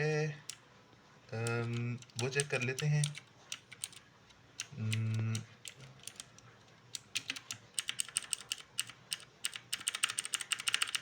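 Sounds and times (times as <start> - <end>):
person humming: 4.8 - 5.5.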